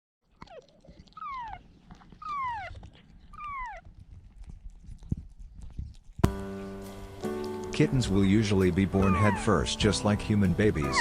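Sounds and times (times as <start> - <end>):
kitten meowing: 8.9 - 9.7.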